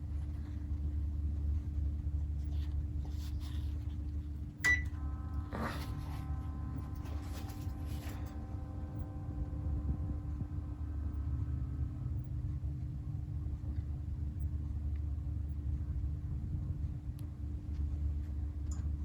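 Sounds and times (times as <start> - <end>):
air conditioner humming: 0.0 - 19.0
faint whining tones: 0.0 - 19.0.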